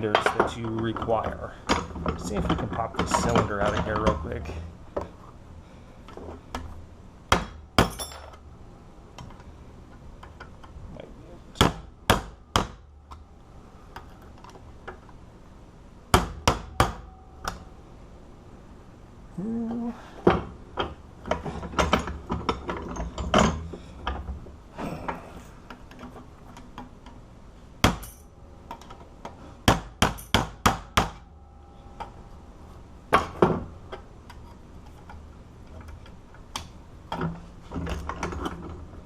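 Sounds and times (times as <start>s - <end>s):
hammer tapping on metal: 16.1s - 17.6s.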